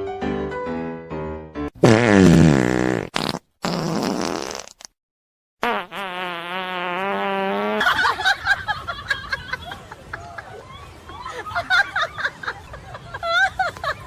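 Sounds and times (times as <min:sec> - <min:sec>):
fart sounds: 0:01.8 - 0:05.0, 0:05.6 - 0:08.0.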